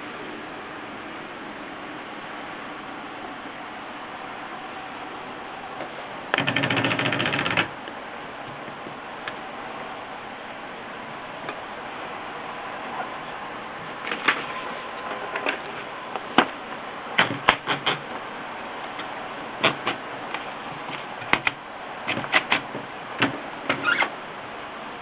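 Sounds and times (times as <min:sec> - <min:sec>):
typewriter key strikes: 0:06.3 - 0:07.7.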